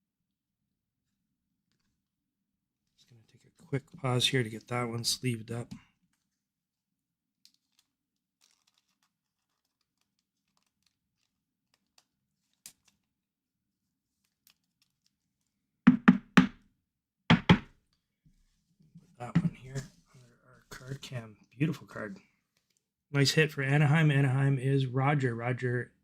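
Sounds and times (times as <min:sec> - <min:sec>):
knocks on a tabletop: 0:15.9 - 0:16.6, 0:17.3 - 0:17.7.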